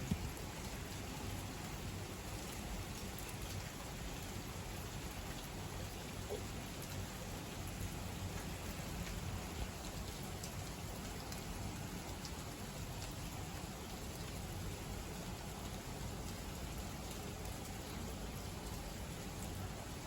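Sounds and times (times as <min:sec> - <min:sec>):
rain falling: 0:00.0 - 0:20.0.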